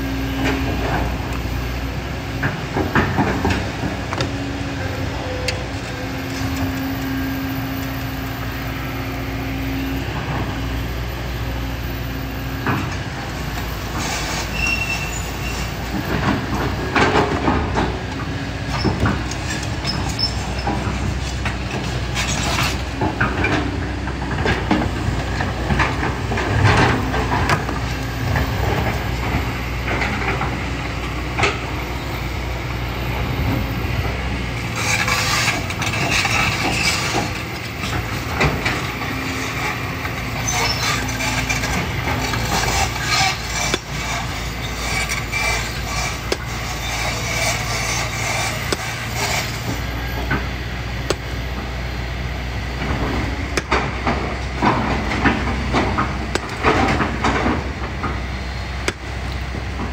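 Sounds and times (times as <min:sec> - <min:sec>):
excavator diesel engine running: 0:00.0 - 0:59.9
bucket scraping and clanking: 0:13.9 - 0:30.6, 0:34.6 - 0:50.5, 0:52.8 - 0:59.9.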